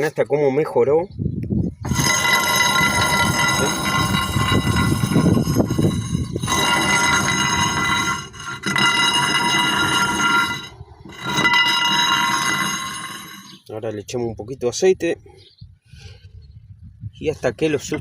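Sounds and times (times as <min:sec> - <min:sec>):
rough rumble: 0:01.5 - 0:14.4
bearing spinning with metallic whine: 0:01.8 - 0:13.7.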